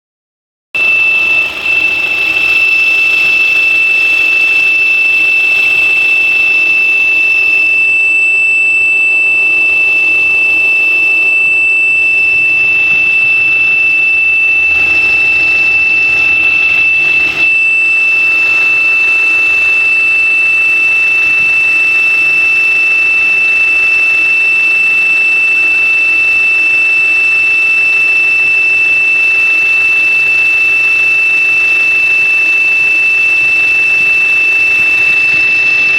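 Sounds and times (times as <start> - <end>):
high-pitched whistle: 0.8 - 35.9
car engine running: 12.5 - 17.5.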